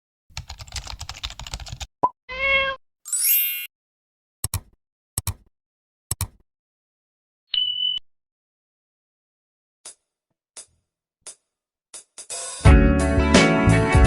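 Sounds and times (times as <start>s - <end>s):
rapid typing-like clicking: 0.4s - 1.9s
cat-like meow: 2.3s - 2.8s
paired clicks: 4.4s - 5.5s, 6.1s - 6.4s.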